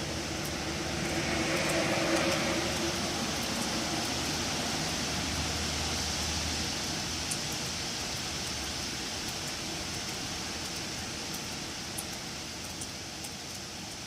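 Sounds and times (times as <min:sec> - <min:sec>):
low rumble: 0:00.0 - 0:04.4.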